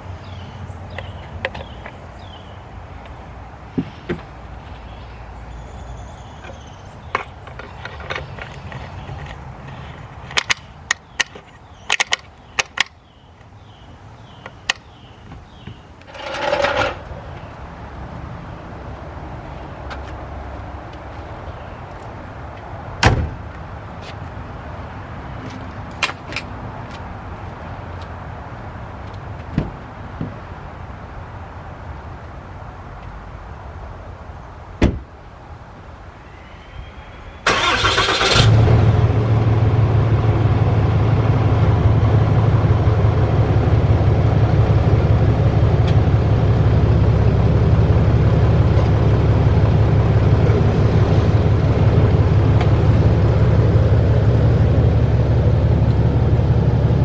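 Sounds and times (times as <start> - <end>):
diesel engine cranking: 3.8 - 12.9, 13.7 - 17.5, 37.4 - 57.0
diesel engine idling: 37.5 - 57.0.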